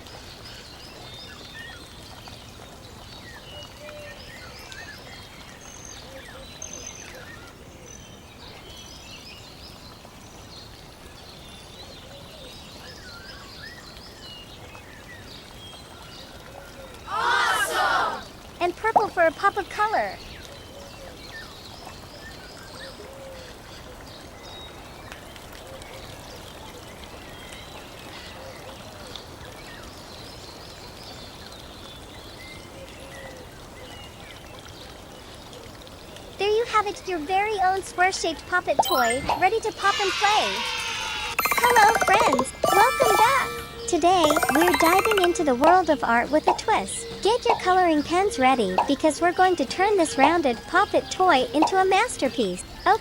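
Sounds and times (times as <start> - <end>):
running water: 23.6 - 53.0
bird chirps: 41.4 - 45.7
small birds chirping: 41.4 - 53.0.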